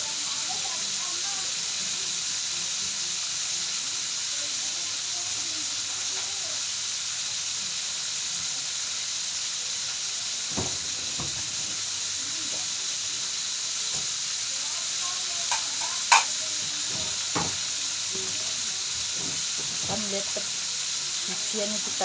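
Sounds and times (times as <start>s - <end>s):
food sizzling in a frying pan: 0.0s - 22.0s
utensil knocking against pan: 10.5s - 11.8s, 15.4s - 17.6s.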